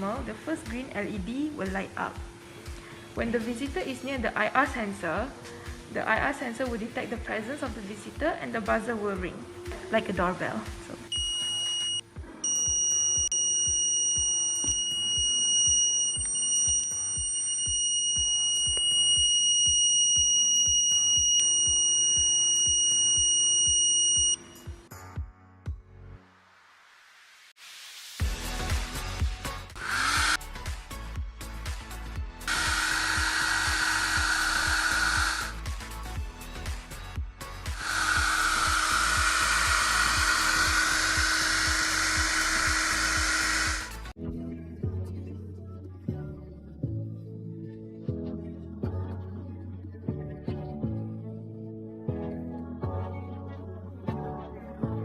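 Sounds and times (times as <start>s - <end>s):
background music with steady beat: 0.0s - 26.8s, 27.6s - 55.0s
high-pitched electronic buzzer: 11.1s - 24.7s, 29.8s - 30.4s, 32.5s - 35.6s, 37.7s - 44.1s.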